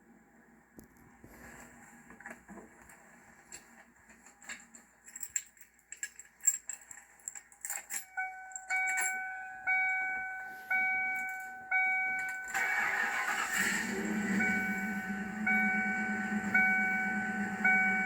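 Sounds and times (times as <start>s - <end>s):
keys jangling: 3.5s - 9.3s
dashboard warning chime: 7.9s - 18.0s
car starter cranking: 11.8s - 18.0s
engine firing: 12.4s - 18.0s.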